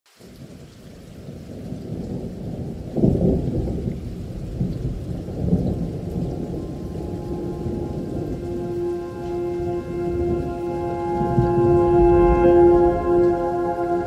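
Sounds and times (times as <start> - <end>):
rain: 0.1 - 14.0
thunder rumbling: 1.2 - 14.0
held musical note: 6.2 - 14.0.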